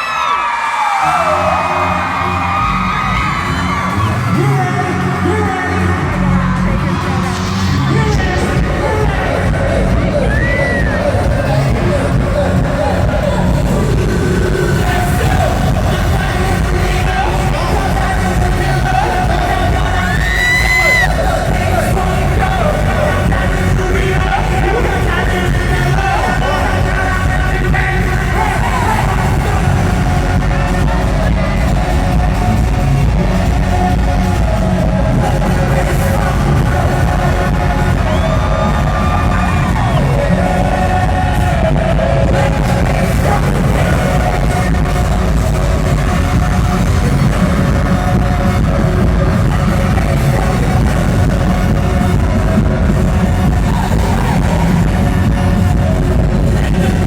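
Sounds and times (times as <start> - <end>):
live pop music with heavy bass: 0.0 - 57.0
person singing: 1.0 - 57.0.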